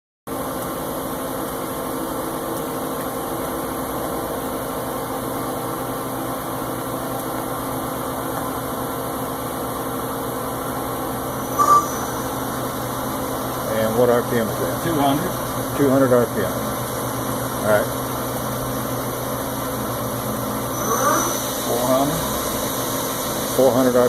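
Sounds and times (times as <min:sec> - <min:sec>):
lathe running with mechanical hum: 0:00.3 - 0:24.0
short loud high tone: 0:11.4 - 0:12.4.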